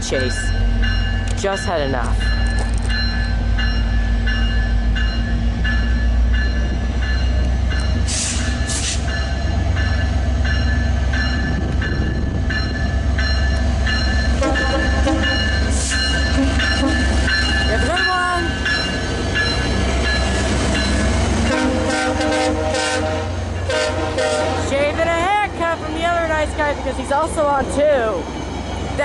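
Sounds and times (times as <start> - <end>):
diesel locomotive rumbling: 0.0 - 29.0
locomotive bell ringing: 0.0 - 29.0
air hiss bursts: 8.0 - 9.0.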